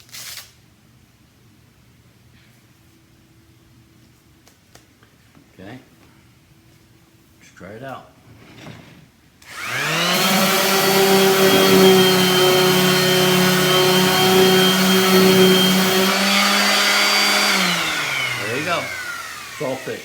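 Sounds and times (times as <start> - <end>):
orbital sander running: 9.5 - 20.0.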